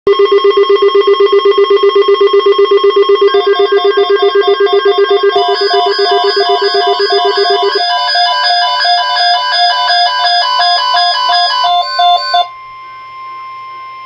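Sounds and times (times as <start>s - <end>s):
loud low electronic beep pulsing: 0.1s - 14.0s
higher repeating beep: 1.6s - 12.5s
steady higher electronic tones: 2.8s - 12.5s.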